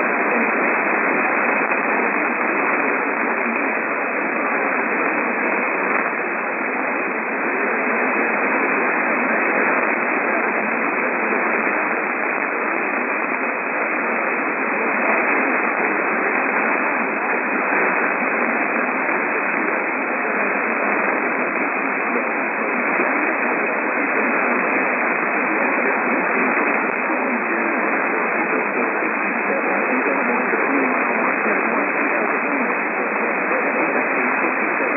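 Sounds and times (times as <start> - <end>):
radio static hiss: 0.0 - 34.9.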